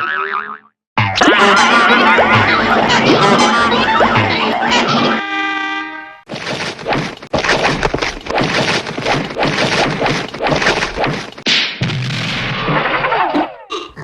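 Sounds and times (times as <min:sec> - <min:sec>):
cartoon whacks thuds and crashes: 0:06.3 - 0:13.6.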